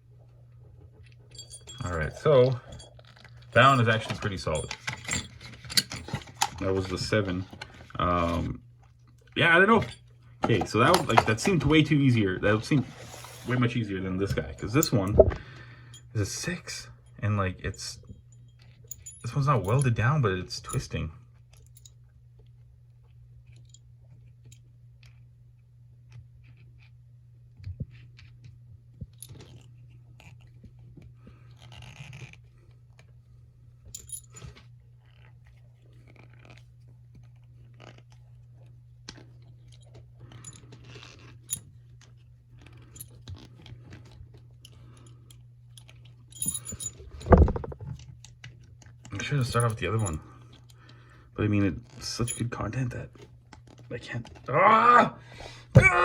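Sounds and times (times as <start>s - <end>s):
steady low hum: 0.0s - 56.0s
metal puzzle clicking and scraping: 1.4s - 8.4s.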